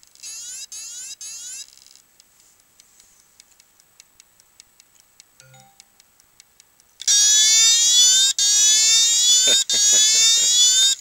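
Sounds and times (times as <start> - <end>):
hard drive ticking faintly: 2.0 - 7.0.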